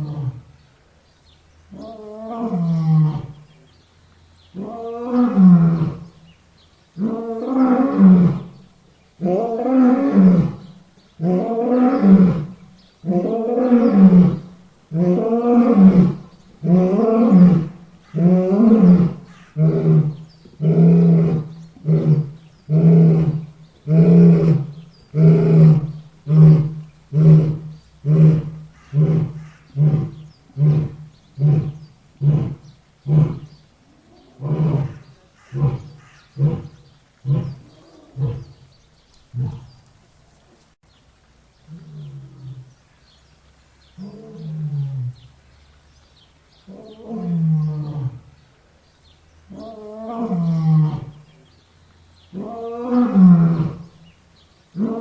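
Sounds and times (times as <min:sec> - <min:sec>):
lion roaring and grunting: 0:09.2 - 0:33.5, 0:34.1 - 0:38.6.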